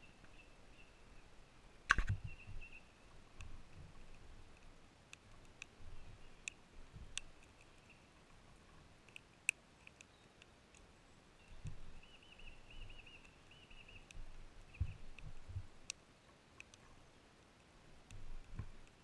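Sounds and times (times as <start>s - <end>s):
campfire crackling and popping: 3.4s - 7.8s.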